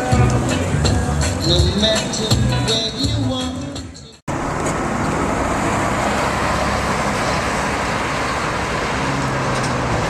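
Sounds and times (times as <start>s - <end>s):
road vehicle rushing: 0.0s - 10.0s
engine hum: 4.3s - 10.0s.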